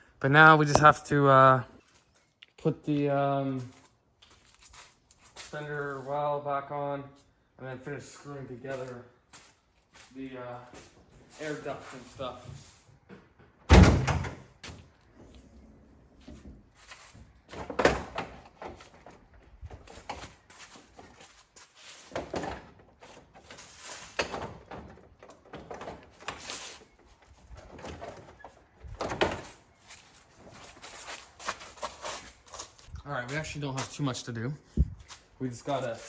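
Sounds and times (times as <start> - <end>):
loud thunks: 13.7 - 14.5.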